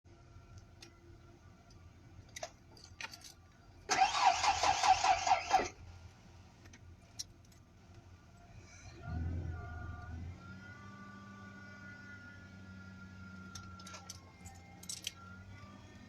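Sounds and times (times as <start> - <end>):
starter cranking engine: 3.9 - 5.8.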